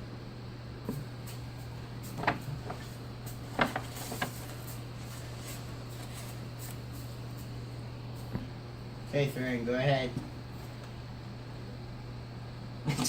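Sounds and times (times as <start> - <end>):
low electrical hum: 0.0 - 13.0
objects knocking and bumping: 2.2 - 2.9, 3.5 - 4.4.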